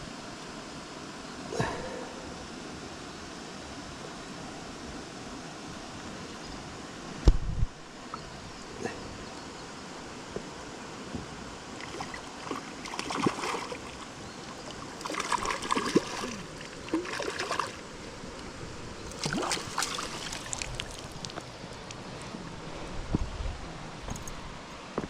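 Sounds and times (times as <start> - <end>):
river water flowing: 9.7 - 25.0
water splashing and sloshing: 11.7 - 22.5.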